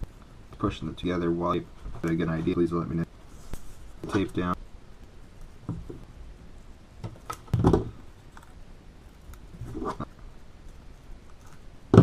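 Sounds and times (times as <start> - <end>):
rubbing noises: 1.4 - 4.6, 9.5 - 10.2
small clicks and rustles: 5.0 - 11.8.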